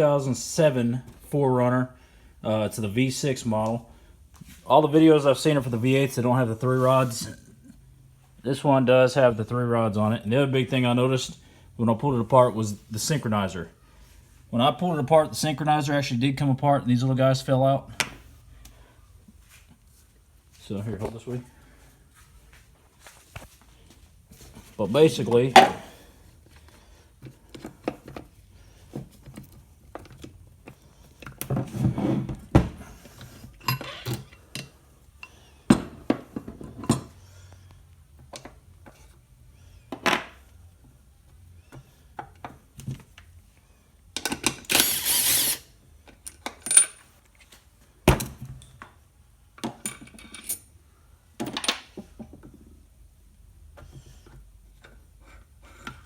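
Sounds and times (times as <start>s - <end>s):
metal parts clinking and knocking: 44.2s - 47.1s, 49.6s - 50.7s.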